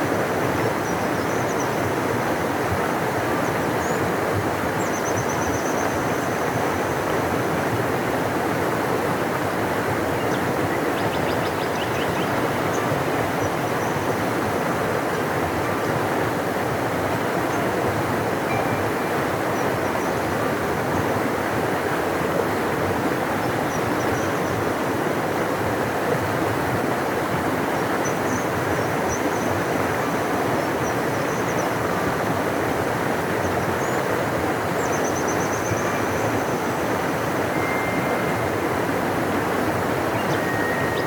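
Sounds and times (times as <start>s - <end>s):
river rushing: 0.0s - 41.0s
faint high bird chirps: 40.1s - 41.0s.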